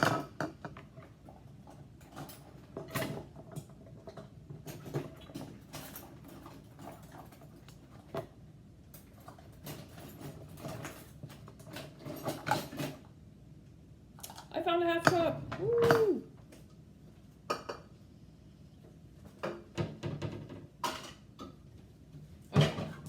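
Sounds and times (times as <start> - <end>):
kitchen utensils clattering: 0.0 - 0.9, 9.0 - 13.1, 19.4 - 21.6.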